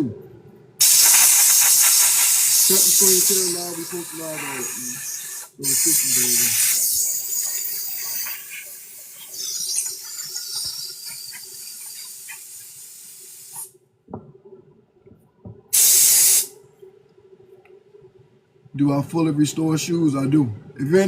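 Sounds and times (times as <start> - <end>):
faint steady hum: 0.0 - 0.8, 16.4 - 21.0
hissing spray: 0.8 - 13.7, 15.7 - 16.5.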